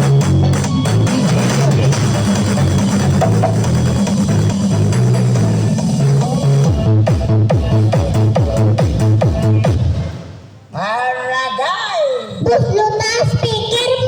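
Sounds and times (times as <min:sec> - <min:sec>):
loud music with drums and bass: 0:00.0 - 0:10.5.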